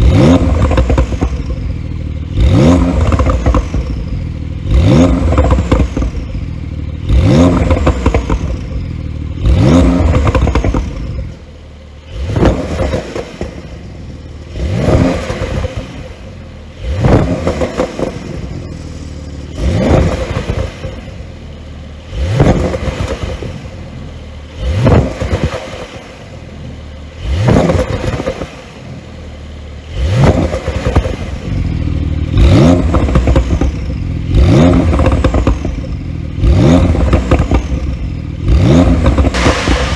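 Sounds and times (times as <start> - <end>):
car engine revving: 0.0 - 39.9
exhaust crackling pops: 0.1 - 4.2, 5.0 - 6.4, 7.1 - 8.8, 9.7 - 11.4, 16.9 - 21.1, 36.7 - 38.1, 38.7 - 39.9.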